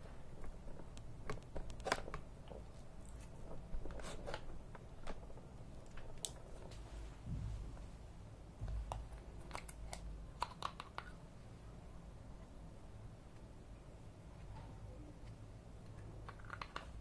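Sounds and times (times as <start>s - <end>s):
small clicks and crackles of handling: 0.4s - 6.9s, 8.7s - 11.2s, 14.4s - 17.0s.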